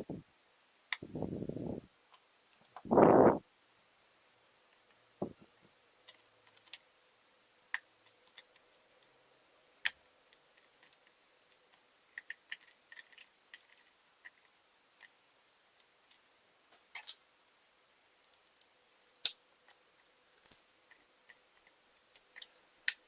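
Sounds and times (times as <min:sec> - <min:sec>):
small tools and parts clicking: 0:09.8 - 0:15.1, 0:20.4 - 0:23.0.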